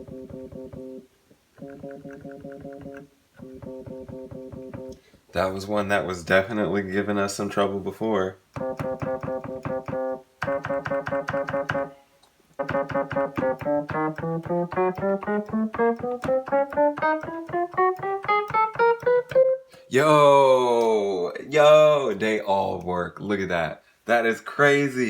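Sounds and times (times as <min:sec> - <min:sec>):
piano-like keyboard notes: 0:12.6 - 0:19.6.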